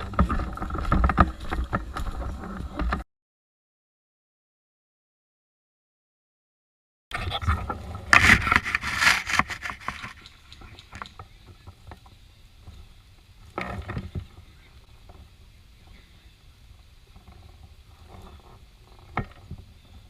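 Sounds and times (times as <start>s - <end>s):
rustling and scraping: 0.0s - 3.0s, 7.1s - 16.1s, 17.1s - 20.0s.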